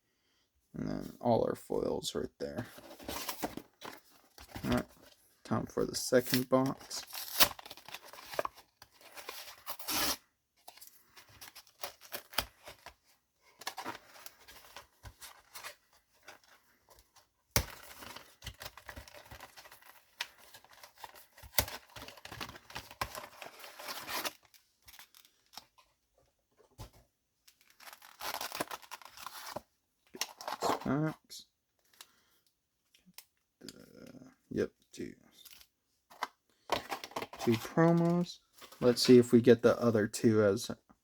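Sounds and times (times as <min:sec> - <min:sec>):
plastic wrap and cardboard tearing: 0:06.2 - 0:10.2, 0:17.6 - 0:25.6, 0:27.6 - 0:29.6.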